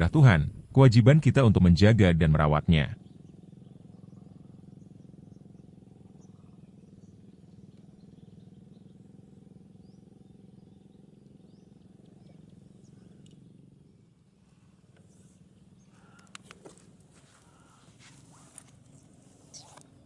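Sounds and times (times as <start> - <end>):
low background hum: 0.0 - 20.0
bird chirps: 2.9 - 14.0, 19.4 - 20.0.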